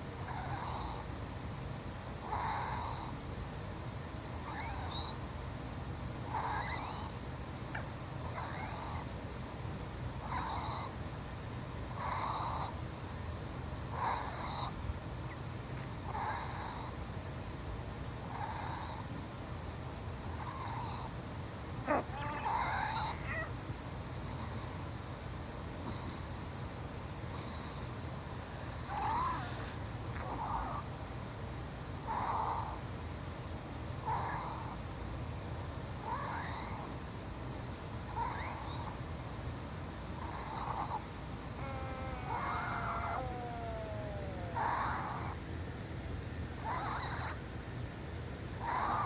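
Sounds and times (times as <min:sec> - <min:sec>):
wheezing breaths: 0:27.5 - 0:30.5, 0:41.5 - 0:45.3.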